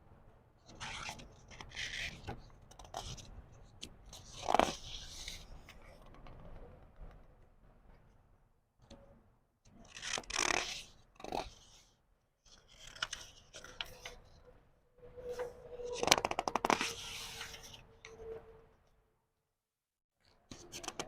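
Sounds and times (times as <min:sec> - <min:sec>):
book pages rustling: 0:12.5 - 0:14.2, 0:16.0 - 0:17.9.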